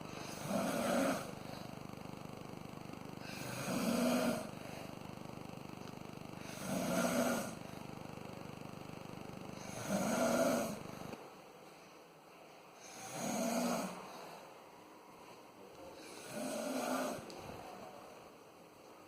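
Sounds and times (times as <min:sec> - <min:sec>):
person snoring: 0:00.0 - 0:11.2, 0:16.0 - 0:17.2.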